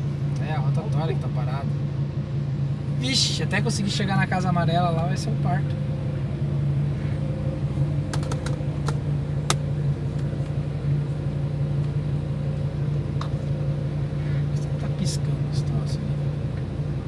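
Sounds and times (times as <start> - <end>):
car engine idling: 7.5 - 11.6
sharp clicks: 8.2 - 9.6.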